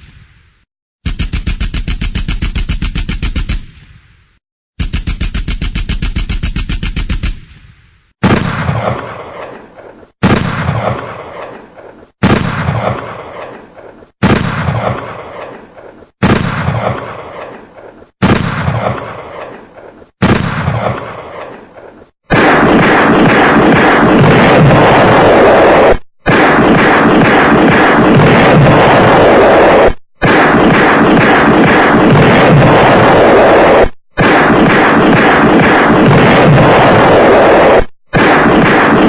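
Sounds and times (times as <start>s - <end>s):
rapid automatic gunfire: 1.1s - 3.6s, 4.8s - 7.4s, 30.2s - 39.0s
heavy single gunshots: 8.2s - 9.6s, 10.2s - 11.6s, 12.2s - 13.6s, 14.2s - 15.6s, 16.2s - 17.6s, 18.2s - 19.6s, 20.2s - 21.6s, 22.3s - 29.2s, 30.2s - 39.0s.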